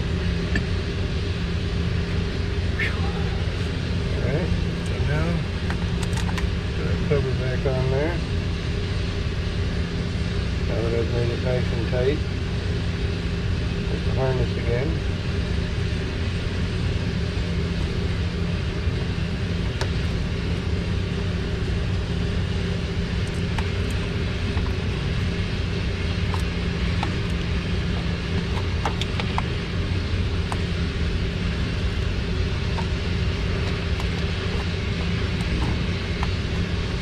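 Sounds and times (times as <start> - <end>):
motor humming: 23.1 - 37.0.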